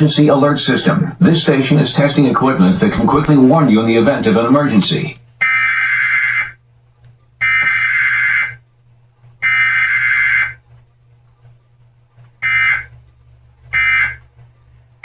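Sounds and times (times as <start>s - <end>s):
buzzing warble data tones: 9.4s - 10.6s, 12.4s - 12.9s, 13.7s - 14.2s.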